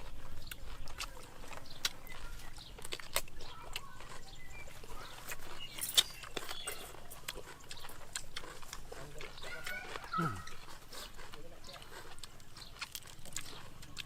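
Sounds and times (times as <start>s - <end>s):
chewing clicks and smacks: 0.0s - 14.0s
faint animal calls: 9.4s - 10.7s.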